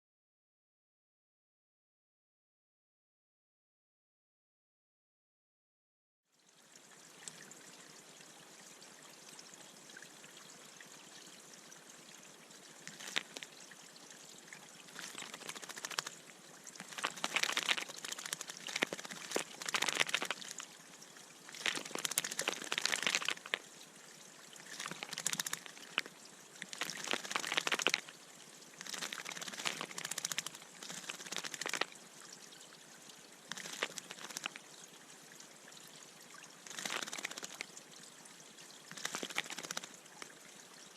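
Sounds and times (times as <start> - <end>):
faint water trickle: 6.3 - 40.9
bird splashing in water: 12.8 - 13.5, 14.9 - 16.2, 16.8 - 20.6, 21.5 - 23.6, 24.6 - 28.1, 28.8 - 31.9, 33.5 - 34.6, 36.6 - 37.6, 38.9 - 40.2.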